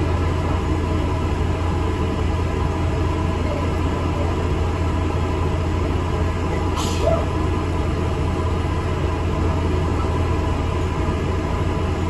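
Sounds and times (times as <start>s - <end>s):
bus engine and road rumble: 0.0s - 12.0s
brief air hiss: 6.8s - 7.2s.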